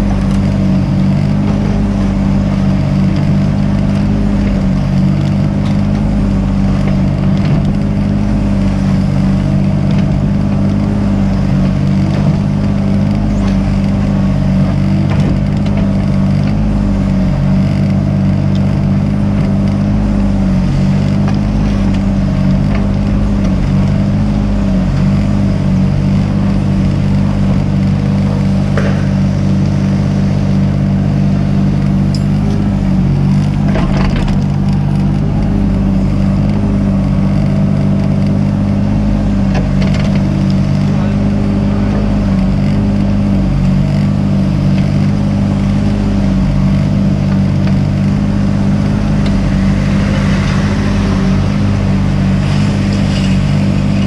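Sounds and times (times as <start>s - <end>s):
excavator diesel engine running: 0.0s - 54.0s
scraping clatter: 0.0s - 54.0s
sharp knock: 28.7s - 29.4s.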